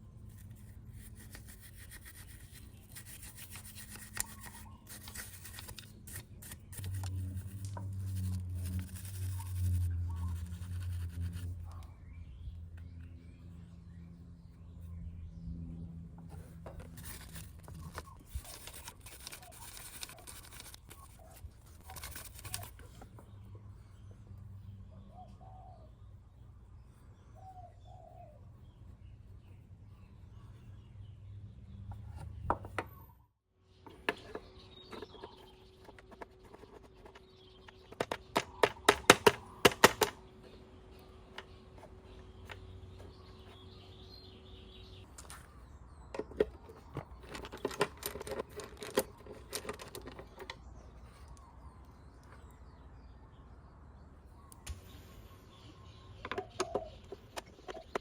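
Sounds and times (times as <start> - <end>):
metallic clicks and scrapes: 0.2 - 11.9, 16.2 - 23.2, 46.1 - 51.4.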